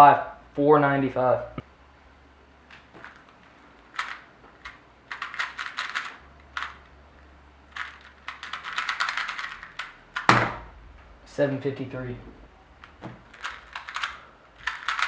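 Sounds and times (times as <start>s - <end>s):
plastic puzzle cube clicking: 2.7s - 10.4s, 12.8s - 15.0s
sharp knock: 10.3s - 11.2s.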